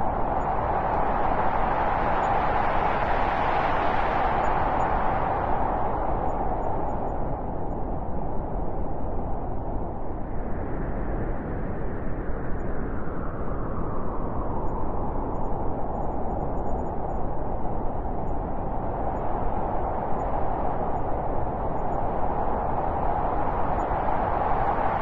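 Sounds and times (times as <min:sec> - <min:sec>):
blizzard wind howling: 0:00.0 - 0:25.0.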